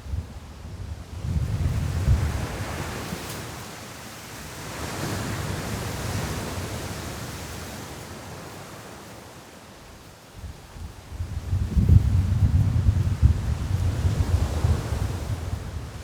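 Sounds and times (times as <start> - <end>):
wind buffeting microphone: 0.0 - 3.2, 10.4 - 16.0
sea waves breaking on shore: 2.1 - 10.2.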